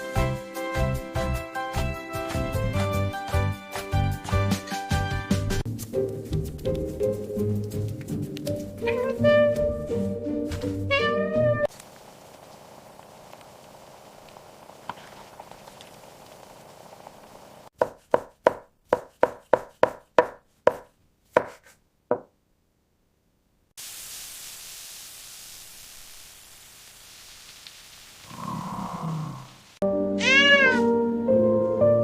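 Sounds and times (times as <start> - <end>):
faint steady hiss: 11.7 - 17.7, 22.6 - 29.8.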